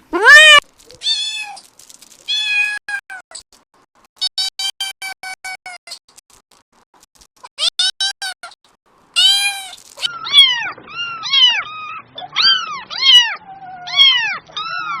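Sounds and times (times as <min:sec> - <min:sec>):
cat meowing: 0:00.1 - 0:01.6, 0:02.3 - 0:03.3, 0:09.2 - 0:15.0.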